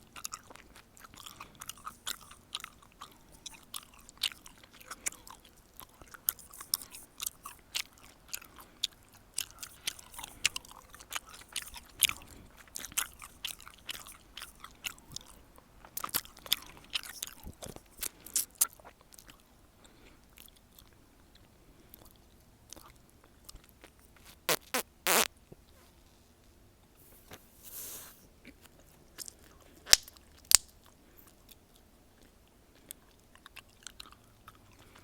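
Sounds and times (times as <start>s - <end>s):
gum chewing smacks: 0.0s - 25.3s.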